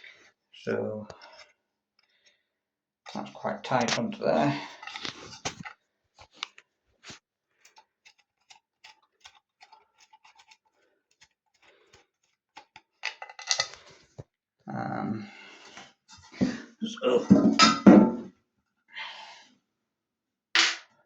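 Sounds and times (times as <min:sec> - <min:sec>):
small hard parts clicking: 0:04.7 - 0:06.6, 0:07.6 - 0:13.9.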